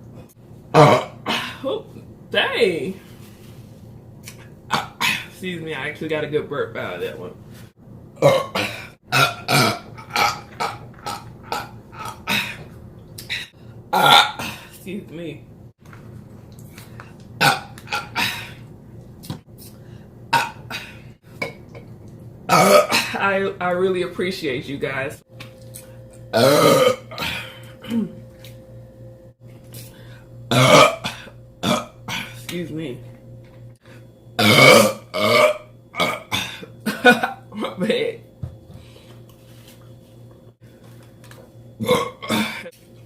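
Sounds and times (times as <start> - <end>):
person burping: 0.7 - 1.8, 4.7 - 5.3, 8.2 - 14.7, 17.4 - 18.6, 20.3 - 21.1, 22.5 - 23.2, 26.3 - 28.2, 30.5 - 32.4, 34.4 - 37.8, 41.8 - 42.7.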